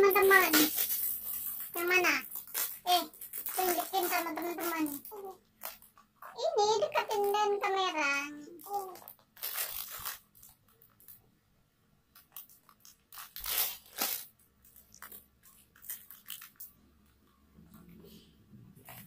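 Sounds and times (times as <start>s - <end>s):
plastic packaging rustling: 0.0s - 6.4s, 8.6s - 11.2s, 12.2s - 16.8s.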